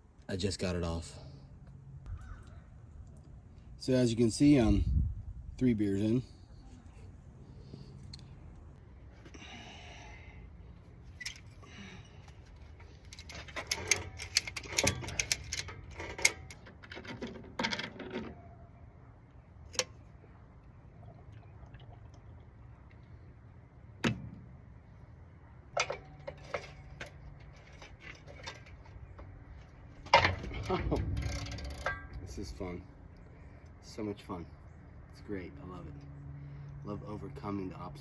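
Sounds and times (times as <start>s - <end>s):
metal tools clinking: 11.2s - 18.4s, 25.8s - 32.7s.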